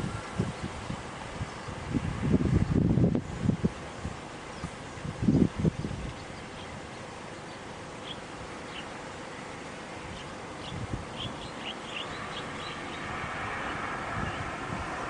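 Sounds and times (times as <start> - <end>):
outdoor hiss: 0.0 - 15.0
approaching train rushing: 11.6 - 15.0.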